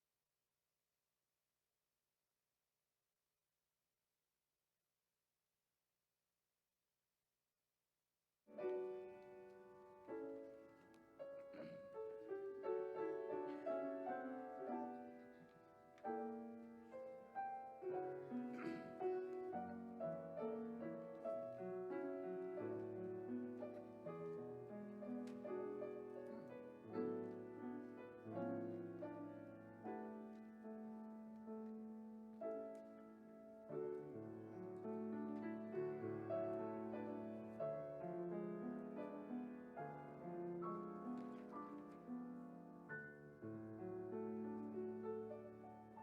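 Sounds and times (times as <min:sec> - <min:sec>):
slow gentle piano piece: 0:08.5 - 0:46.0.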